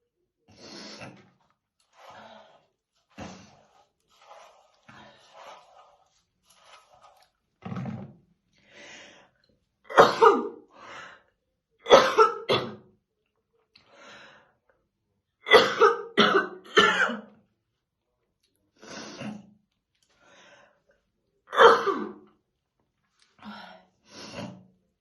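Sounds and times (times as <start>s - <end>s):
woman coughing: 9.9s - 10.6s, 11.9s - 12.8s, 15.5s - 17.2s, 21.5s - 22.2s.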